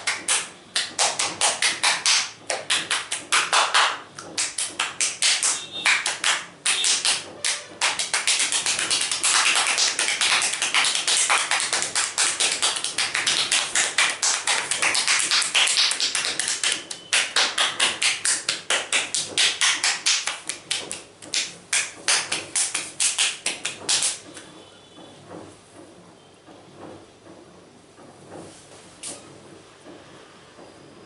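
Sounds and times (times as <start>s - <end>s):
hands tapping on head: 0.0s - 24.5s.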